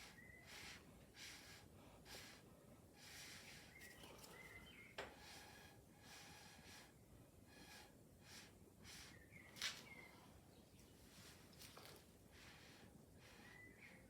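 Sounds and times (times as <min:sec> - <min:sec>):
breath puffs through a straw: 0:00.0 - 0:04.1, 0:05.1 - 0:09.3, 0:12.3 - 0:14.0.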